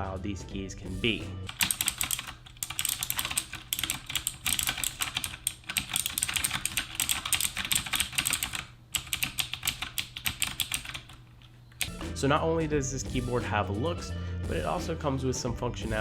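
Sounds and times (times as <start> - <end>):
mechanical keyboard typing: 1.5 - 11.2.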